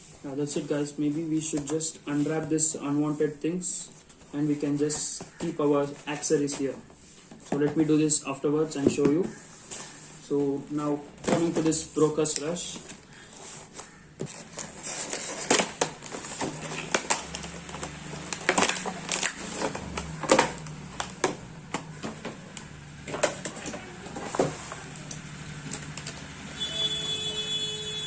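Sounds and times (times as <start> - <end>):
packaging crinkling and tapping: 11.2 - 26.3.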